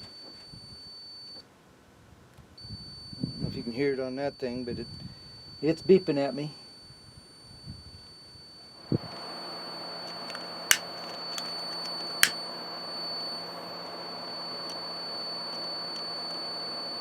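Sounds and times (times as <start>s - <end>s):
sharp clicks: 10.1s - 12.4s.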